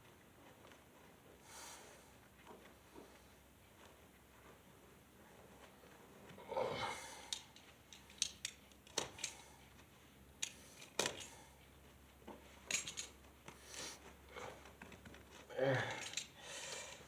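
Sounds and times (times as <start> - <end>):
metallic clicks and clinks: 7.3 - 9.5, 12.6 - 13.3, 15.9 - 17.0.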